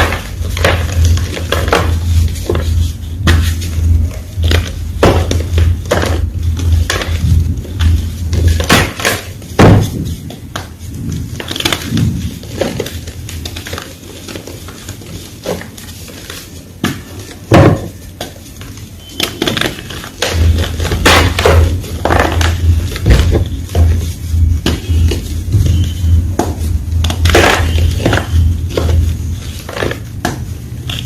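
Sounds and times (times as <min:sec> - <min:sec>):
gym chalk crunching: 0:24.7 - 0:31.0.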